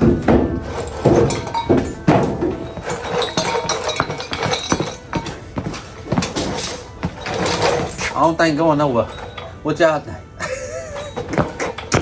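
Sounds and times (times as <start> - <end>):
metallic clinking and knocking: 0.4 - 8.5, 11.0 - 12.0.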